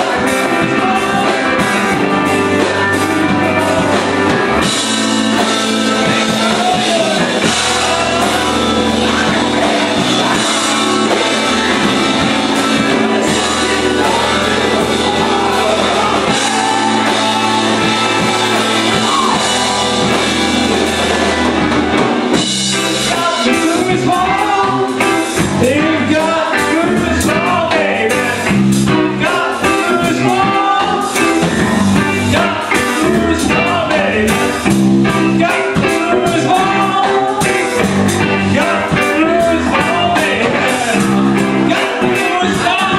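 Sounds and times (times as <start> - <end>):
person singing: 0.0 - 42.9
rock song played by a band: 0.0 - 42.9.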